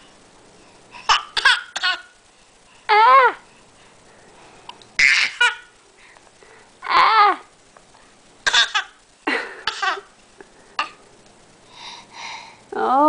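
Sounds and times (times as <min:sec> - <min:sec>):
baby fake coughing: 0:01.1 - 0:02.1, 0:05.0 - 0:05.6, 0:08.4 - 0:09.0, 0:09.6 - 0:10.0.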